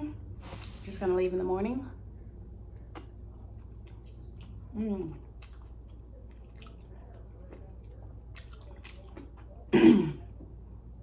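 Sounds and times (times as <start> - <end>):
wet chewing and smacking: 2.8 - 9.6.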